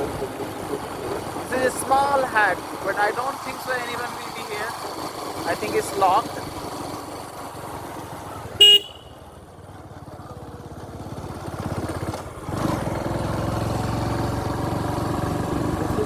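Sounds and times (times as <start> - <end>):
vehicle engine running: 0.0 - 16.0
horn toot: 8.6 - 9.2.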